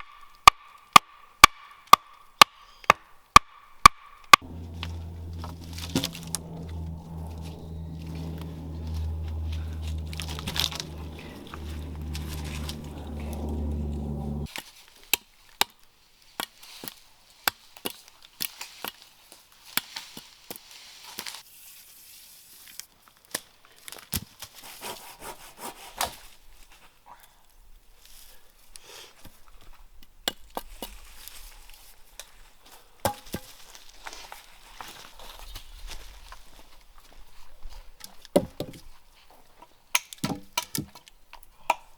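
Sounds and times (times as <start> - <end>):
steady low hum: 4.4 - 14.5.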